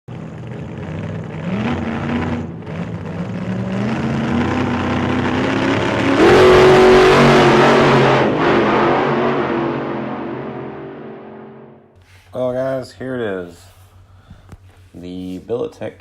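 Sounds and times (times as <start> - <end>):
car engine revving: 0.1 - 11.9.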